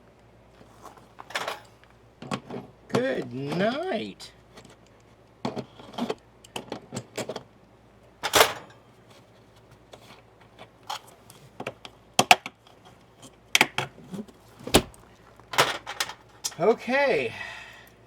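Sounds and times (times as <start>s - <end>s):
metallic clicks and knocks: 14.7s - 15.0s
metallic rattle: 14.7s - 15.1s.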